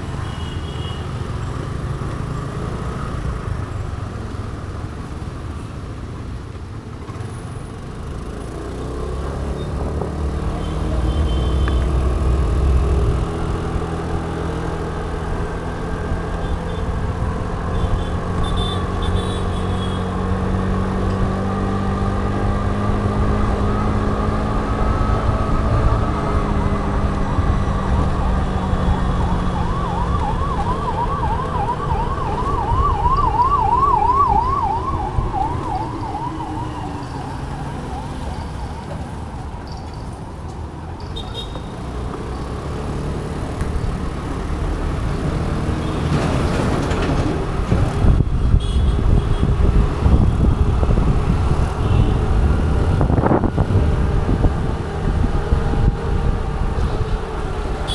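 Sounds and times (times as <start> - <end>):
scooter engine: 7.1 - 39.4
warbling siren: 20.0 - 39.5.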